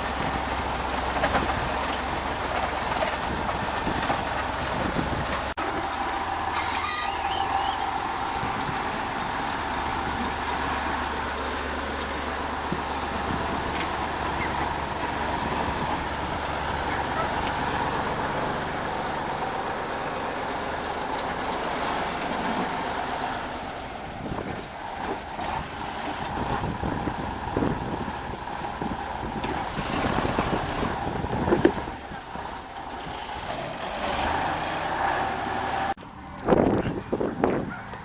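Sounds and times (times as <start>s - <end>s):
diesel engine running: 0.0s - 38.0s
rough uneven machine noise: 5.6s - 27.0s, 29.4s - 36.0s.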